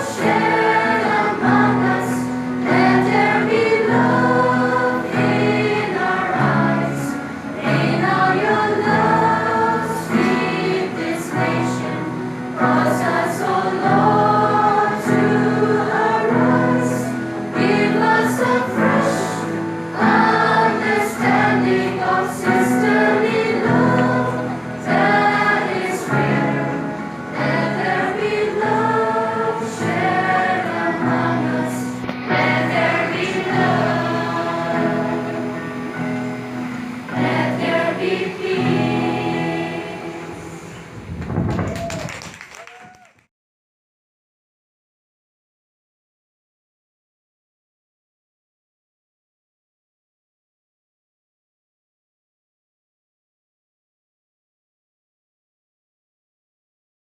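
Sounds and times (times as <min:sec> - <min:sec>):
choir singing: 0:00.0 - 0:41.0.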